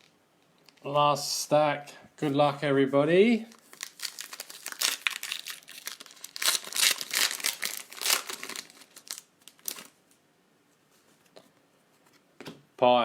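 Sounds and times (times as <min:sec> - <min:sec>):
card pack wrappers crinkling and tearing: 0:03.5 - 0:10.1.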